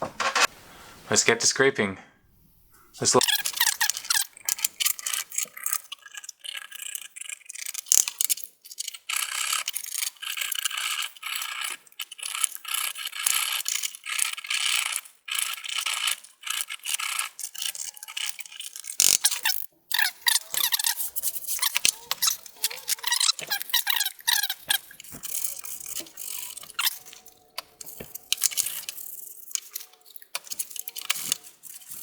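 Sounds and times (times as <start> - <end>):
scraping dust off fan blades: 0.0 - 1.2.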